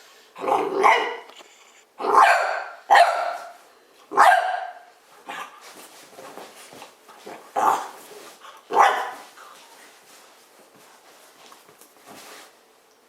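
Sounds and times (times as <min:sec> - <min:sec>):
dog barking: 0:00.5 - 0:01.3, 0:02.0 - 0:05.5, 0:07.6 - 0:07.9, 0:08.7 - 0:09.3.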